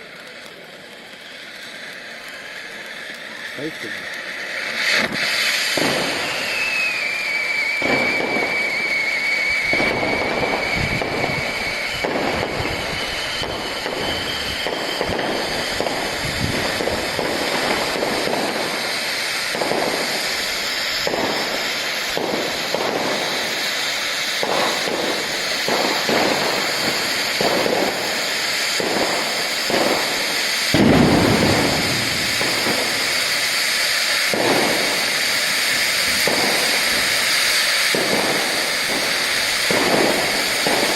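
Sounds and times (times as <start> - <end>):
falling firework whistle: 0.0 - 40.9
firework crackling: 0.0 - 40.9
firework shots: 0.0 - 40.9
deep firework boom: 7.8 - 18.9, 24.4 - 40.9.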